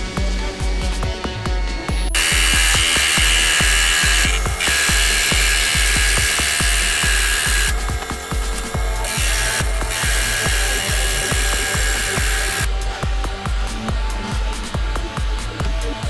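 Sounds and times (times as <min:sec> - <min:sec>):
background music with steady beat: 0:00.0 - 0:16.0
power tool running: 0:02.0 - 0:13.0.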